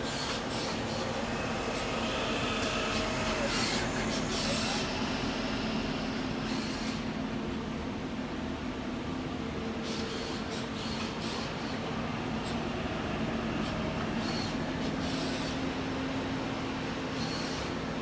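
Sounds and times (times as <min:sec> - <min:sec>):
lathe machine hum: 0:00.0 - 0:07.0.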